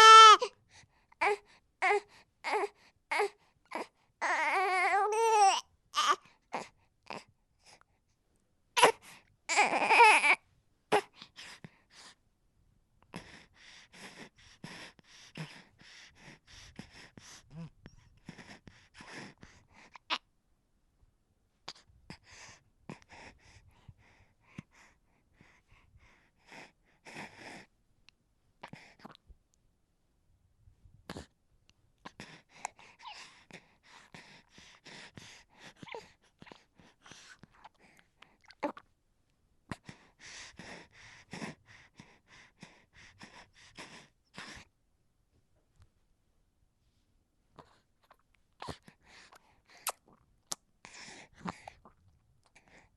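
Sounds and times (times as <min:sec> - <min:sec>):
baby crying squeakily: 0:00.0 - 0:00.5
baby whimpering: 0:00.0 - 0:00.6, 0:01.2 - 0:07.3, 0:08.8 - 0:11.2, 0:35.8 - 0:36.2
baby whimpering and fussing: 0:00.0 - 0:07.8, 0:08.8 - 0:12.2, 0:13.1 - 0:20.3, 0:32.0 - 0:38.8, 0:47.5 - 0:50.2.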